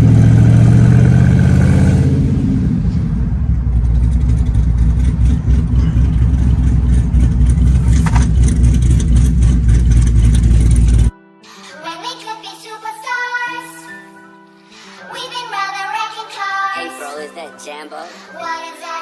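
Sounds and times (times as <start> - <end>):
car engine rumbling: 0.0 - 11.1
exhaust pops and crackles: 2.8 - 11.1.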